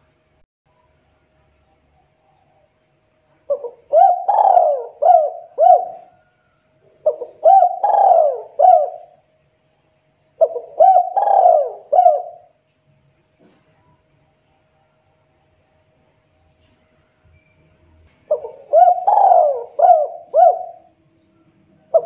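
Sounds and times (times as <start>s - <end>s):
dove cooing: 3.5s - 9.2s, 10.4s - 12.5s, 18.2s - 21.0s.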